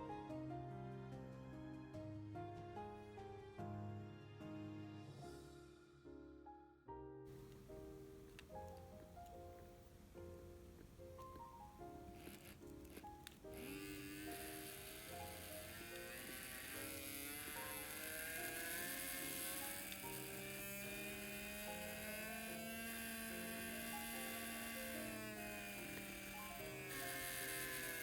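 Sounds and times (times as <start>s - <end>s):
background music: 0.0s - 28.0s
model train motor whine: 11.2s - 28.0s.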